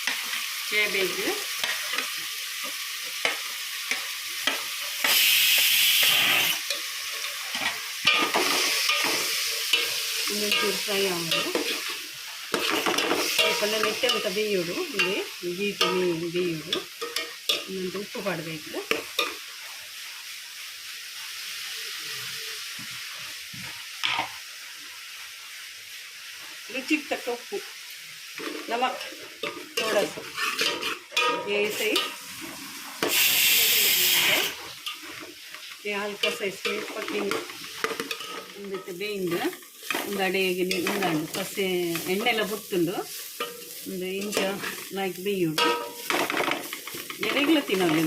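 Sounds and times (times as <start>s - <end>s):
vegetables sizzling in a pan: 0.0s - 48.0s
spoon scraping and knocking pan: 1.5s - 17.7s, 28.4s - 33.3s, 36.2s - 42.2s, 45.6s - 48.0s.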